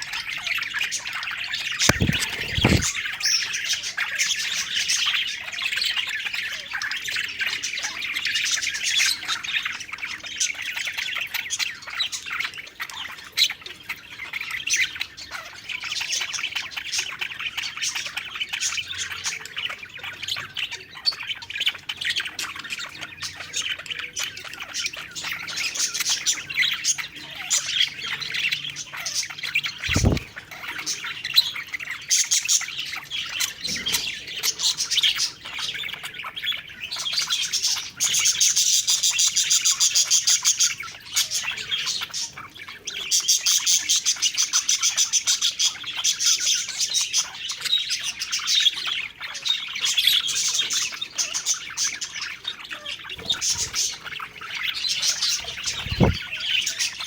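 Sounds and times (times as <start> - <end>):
budgerigars chirping and chattering: 0.0 - 57.0
low thud: 1.9 - 2.9, 29.9 - 30.4.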